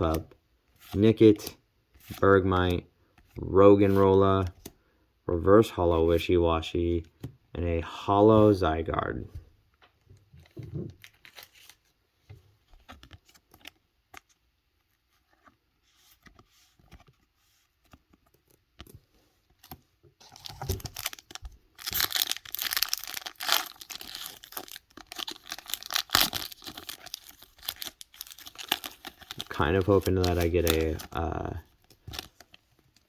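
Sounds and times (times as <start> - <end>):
foil wrapper tearing and crinkling: 20.2 - 32.5.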